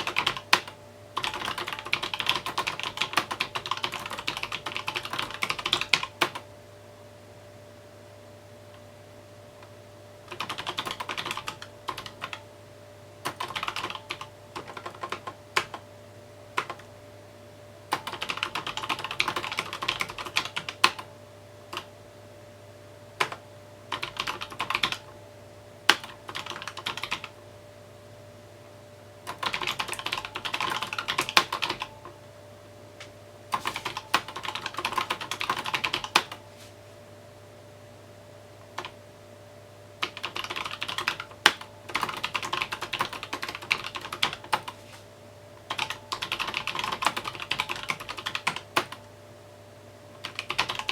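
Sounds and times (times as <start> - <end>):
mechanical keyboard typing: 0.0 - 6.4, 10.3 - 12.4, 13.2 - 15.8, 16.6 - 16.9, 17.9 - 21.1, 21.7 - 21.9, 23.2 - 25.1, 25.9 - 27.3, 29.2 - 32.2, 33.5 - 36.4, 38.8 - 39.0, 40.0 - 44.8, 45.7 - 49.1, 50.2 - 50.9.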